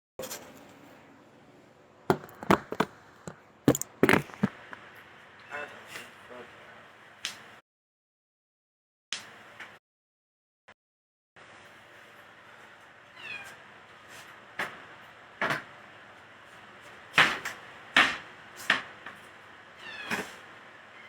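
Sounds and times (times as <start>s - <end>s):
sharp knocks or clatters: 2.1s - 4.8s
cat meowing: 13.1s - 13.6s, 19.8s - 20.4s.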